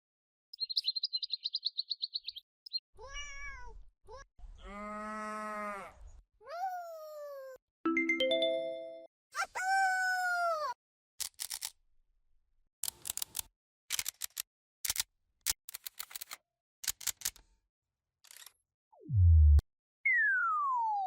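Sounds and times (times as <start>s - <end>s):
electronic tone bending downward: 19.0s - 21.0s.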